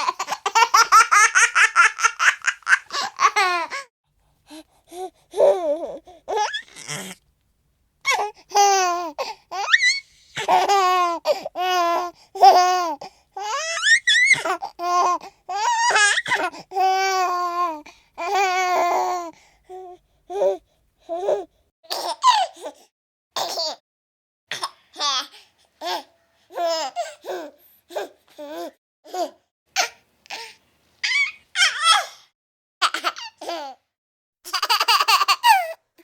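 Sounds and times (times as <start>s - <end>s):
baby laughing and giggling: 0.0s - 3.9s, 5.4s - 7.2s, 8.1s - 12.8s, 13.4s - 17.2s, 31.0s - 32.1s, 34.5s - 35.8s.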